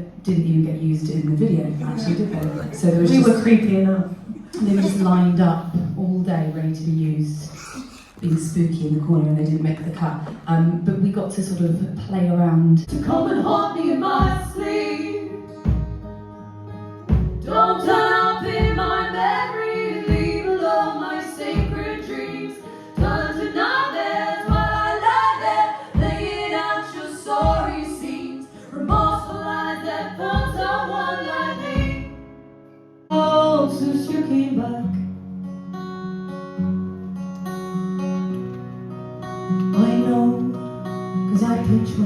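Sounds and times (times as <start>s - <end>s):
person singing over drum beat: 14.2s - 14.7s, 18.4s - 19.1s, 20.1s - 20.6s, 23.0s - 23.5s, 24.5s - 25.0s, 26.0s - 26.4s, 30.4s - 30.8s
guitar and held notes: 14.3s - 20.6s, 33.6s - 42.0s.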